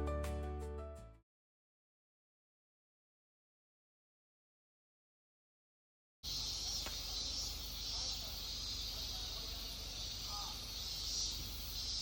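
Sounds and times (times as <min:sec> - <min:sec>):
steady high hiss: 0:06.2 - 0:12.0.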